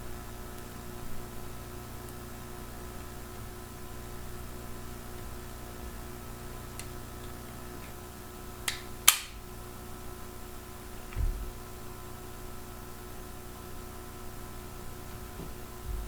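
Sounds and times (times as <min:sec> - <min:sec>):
steady hum: 0:00.0 - 0:16.0
revolver metallic clicks: 0:08.6 - 0:09.4
soft low thump: 0:11.1 - 0:11.6, 0:15.3 - 0:16.0.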